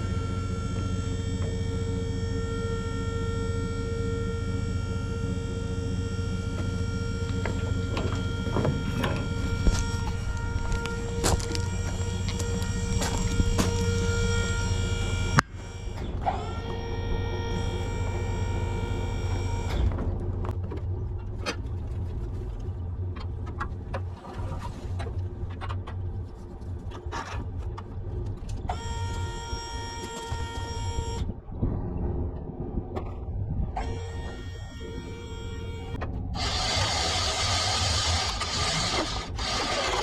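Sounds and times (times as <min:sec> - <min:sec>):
hydraulic pump whining: 0:00.0 - 0:20.6, 0:28.4 - 0:31.4, 0:33.7 - 0:40.0.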